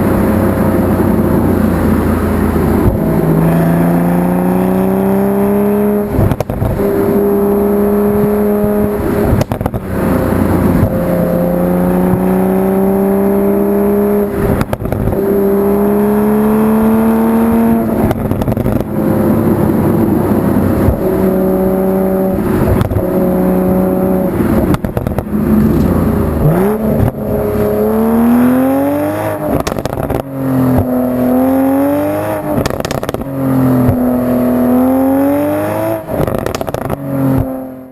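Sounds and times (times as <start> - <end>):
car engine accelerating hard: 0.0 - 37.9
exhaust crackles and pops: 0.0 - 37.9.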